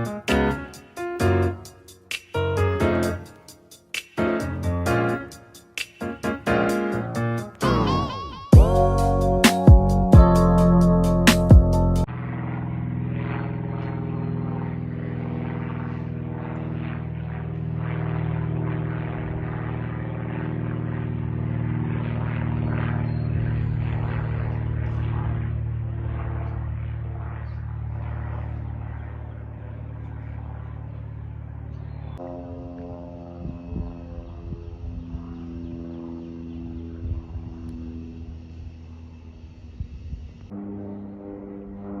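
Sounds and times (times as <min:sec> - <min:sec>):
propeller aircraft drone: 0:00.0 - 0:42.0.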